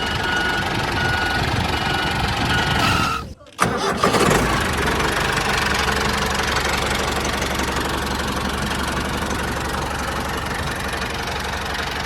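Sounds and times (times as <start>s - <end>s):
small engine idling: 3.6s - 12.0s.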